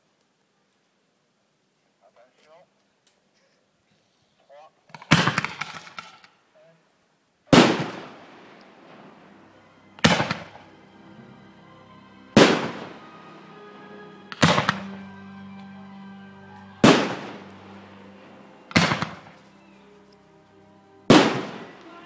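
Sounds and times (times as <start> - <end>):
fireworks bangs: 4.9 - 6.2, 7.5 - 9.3, 10.0 - 10.7, 12.4 - 13.1, 14.3 - 15.0, 16.8 - 19.5, 21.1 - 22.0
fireworks crackling: 4.9 - 6.3, 7.5 - 10.8, 12.3 - 15.8, 16.5 - 22.0
music playing: 8.0 - 22.0.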